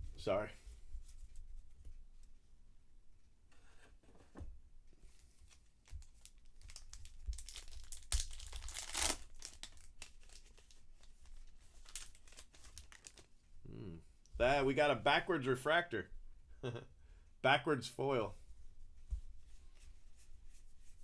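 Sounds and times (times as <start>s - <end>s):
plastic wrappers tearing and crinkling: 5.4s - 13.3s.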